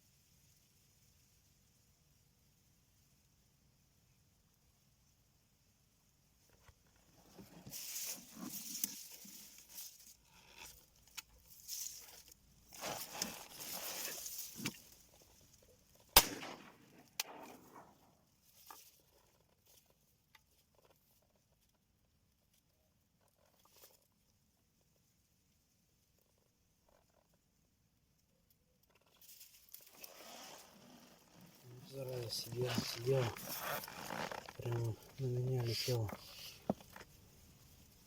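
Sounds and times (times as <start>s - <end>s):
rustling and handling noise: 6.4s - 38.0s
shotgun shot: 16.2s - 18.1s.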